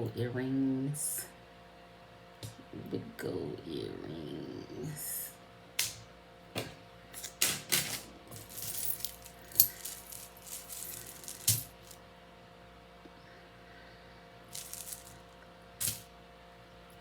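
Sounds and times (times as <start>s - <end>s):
metal jewelry clinking: 7.2s - 12.0s, 14.5s - 15.2s, 15.8s - 16.1s.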